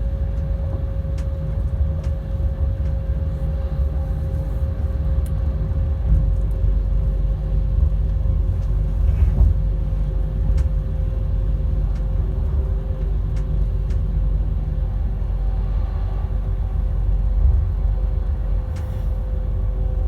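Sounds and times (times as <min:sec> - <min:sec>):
train running gear rumbling: 0:00.0 - 0:20.0.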